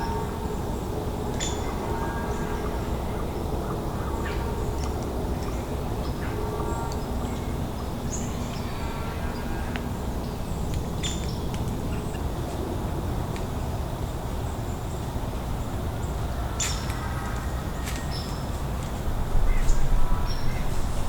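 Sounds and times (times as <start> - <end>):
steady low rumble: 0.0 - 21.0
birds chirping: 15.6 - 21.0.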